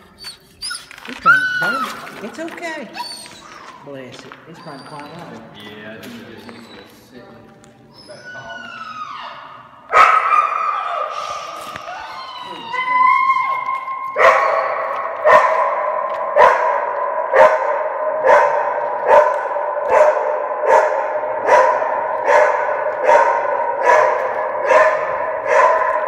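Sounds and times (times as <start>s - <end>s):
dog barking with echo: 9.9s - 11.6s, 13.6s - 26.0s.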